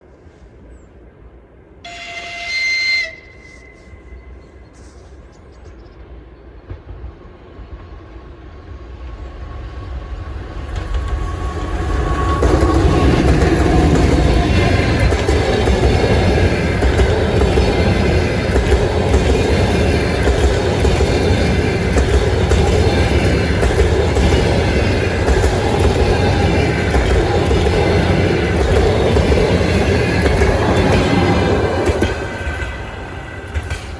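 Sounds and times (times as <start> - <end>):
passenger train passing: 0.0 - 33.9
train wheels clattering on rails: 9.7 - 33.9.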